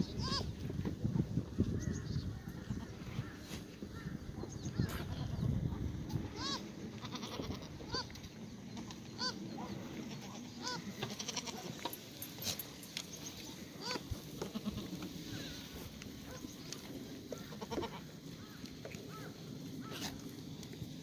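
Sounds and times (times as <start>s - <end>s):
goats bleating: 6.4s - 8.1s, 10.1s - 11.9s, 13.8s - 15.0s, 17.4s - 18.2s.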